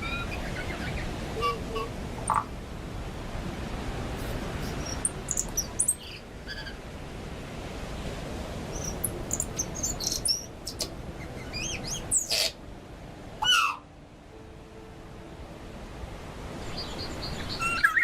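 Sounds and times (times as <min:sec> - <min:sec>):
low background noise: 0:00.0 - 0:17.9
bird singing: 0:04.8 - 0:06.8, 0:08.7 - 0:12.5, 0:16.6 - 0:18.0.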